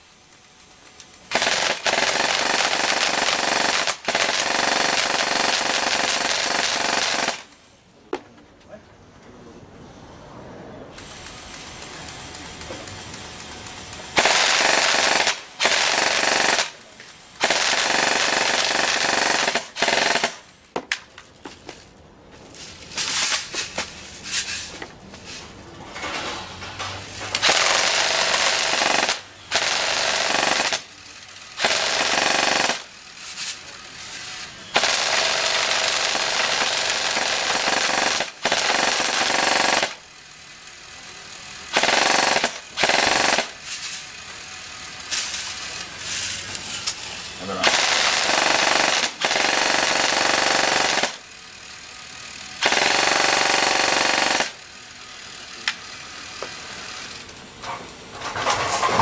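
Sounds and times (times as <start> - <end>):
airsoft gun firing full-auto bursts: 1.3 - 7.5, 14.1 - 16.8, 17.4 - 20.5, 27.4 - 33.2, 34.7 - 40.3, 41.6 - 43.6, 47.5 - 54.8.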